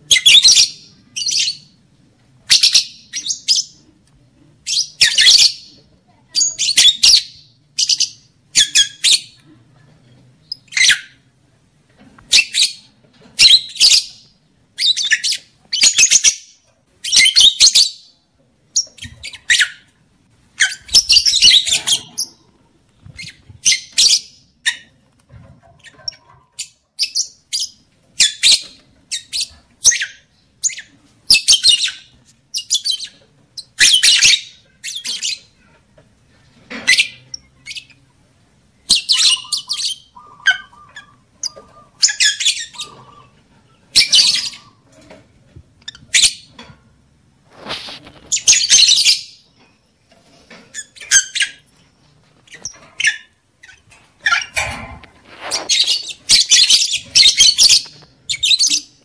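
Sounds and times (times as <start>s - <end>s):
lovebird chattering calls: 38.9s - 43.4s.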